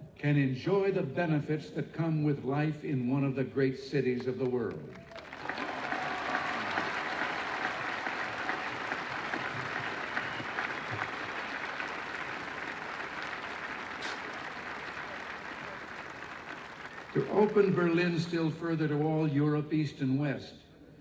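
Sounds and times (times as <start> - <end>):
audience applauding: 4.7 - 18.4.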